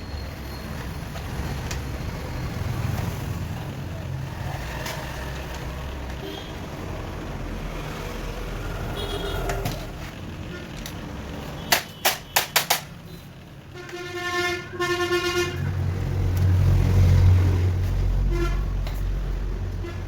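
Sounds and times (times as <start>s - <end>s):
motor vehicle passing: 0.8s - 10.2s, 15.6s - 19.8s
vehicle horn honking: 8.9s - 9.6s, 13.1s - 15.6s, 18.3s - 18.8s.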